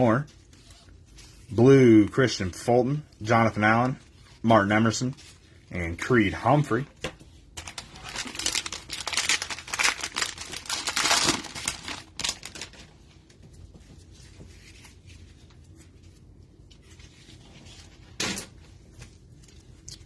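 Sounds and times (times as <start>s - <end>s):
plastic wrapper tearing and crinkling: 7.6s - 13.0s.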